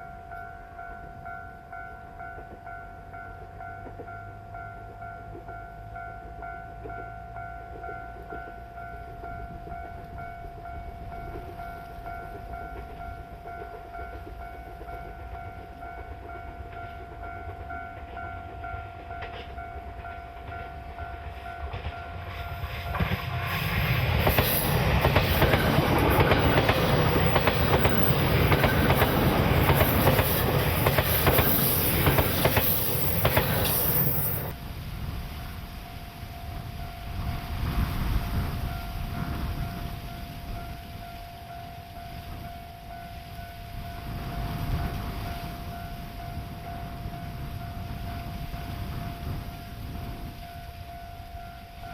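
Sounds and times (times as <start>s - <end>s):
train wheels clattering over rails: 11.2s - 34.6s
level crossing alarm ringing: 24.0s - 34.5s.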